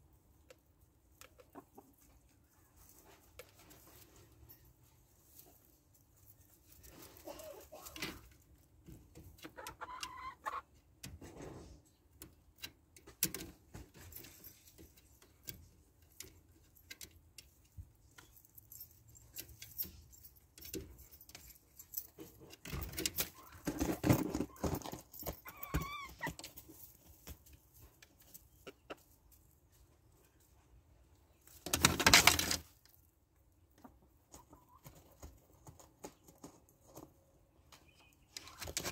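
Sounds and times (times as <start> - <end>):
hens clucking and calling: 7.0 - 8.1, 9.4 - 10.8, 28.6 - 29.2.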